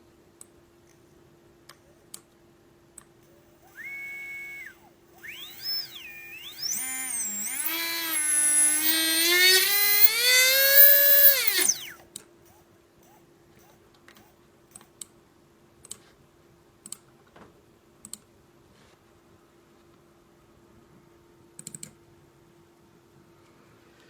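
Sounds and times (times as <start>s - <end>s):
faint clicks: 3.0s - 12.0s
electric motor whine: 3.6s - 12.0s.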